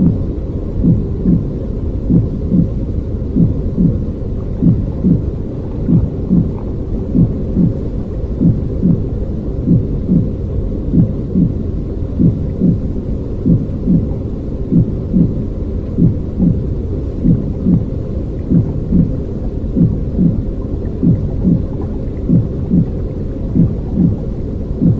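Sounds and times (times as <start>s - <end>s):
steady low rumbling noise: 0.0s - 24.9s
baby's heartbeat thudding: 0.8s - 1.5s, 2.1s - 2.8s, 3.4s - 7.8s, 8.4s - 9.1s, 9.7s - 11.6s, 12.2s - 15.4s, 16.0s - 17.9s, 18.5s - 19.2s, 19.8s - 20.4s, 21.0s - 24.9s.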